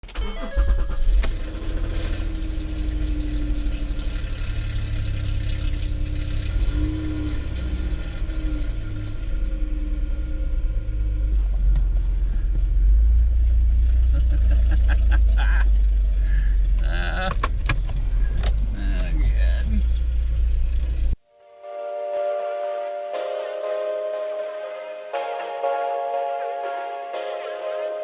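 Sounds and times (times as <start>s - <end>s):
car engine rumbling: 0.0s - 21.2s.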